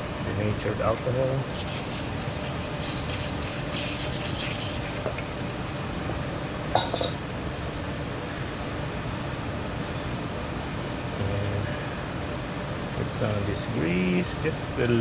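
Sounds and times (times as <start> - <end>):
steady background hum: 0.0 - 15.0
metallic clink: 6.8 - 7.2.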